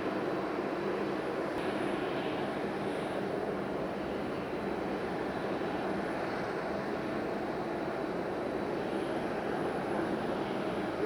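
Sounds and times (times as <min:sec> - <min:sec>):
jet engines running: 0:00.0 - 0:11.0.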